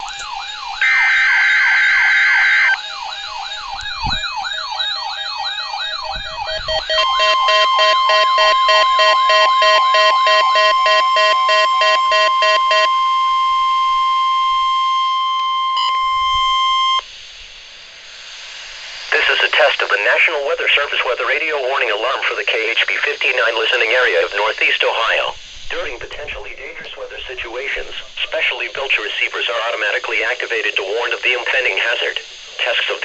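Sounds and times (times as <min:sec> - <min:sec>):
fast wavering siren wail: 0:00.0 - 0:17.1
stepped warbling alarm: 0:00.0 - 0:17.1
harsh steady alarm tone: 0:00.0 - 0:17.2, 0:19.1 - 0:33.0
steady high alarm tone: 0:00.0 - 0:17.2.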